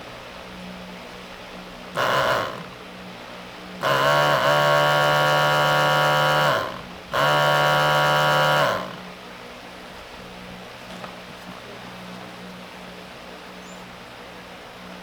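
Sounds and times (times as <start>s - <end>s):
cow mooing: 2.0s - 2.8s, 3.8s - 9.1s.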